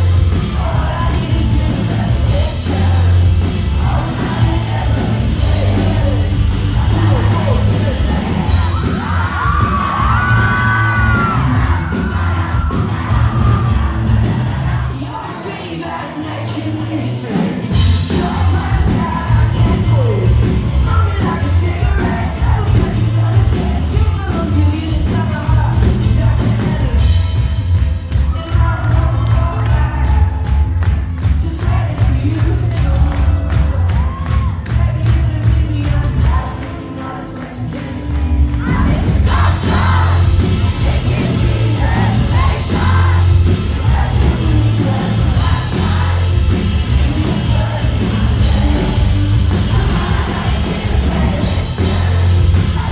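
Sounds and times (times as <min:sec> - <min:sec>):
crowd cheering: 0:00.0 - 0:52.9
lead singer: 0:00.0 - 0:52.9
live pop-rock band: 0:00.0 - 0:52.9.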